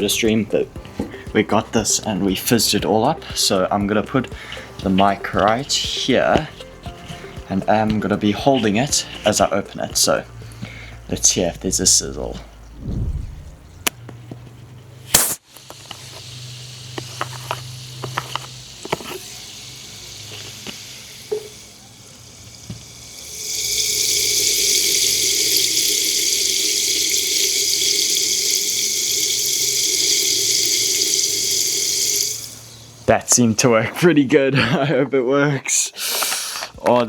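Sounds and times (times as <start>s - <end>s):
gas hissing from bottle: 15.1s - 33.4s.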